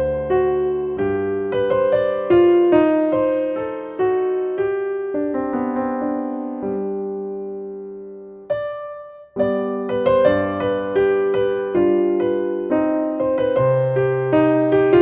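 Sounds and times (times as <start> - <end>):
slow piano music: 0.0 - 15.0.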